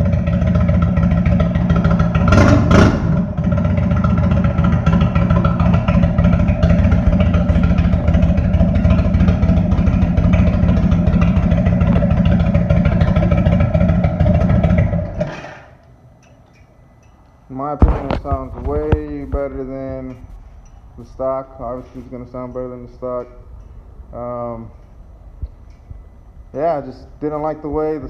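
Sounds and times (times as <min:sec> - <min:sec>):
motorcycle engine idling: 0:00.0 - 0:15.3, 0:17.8 - 0:28.0.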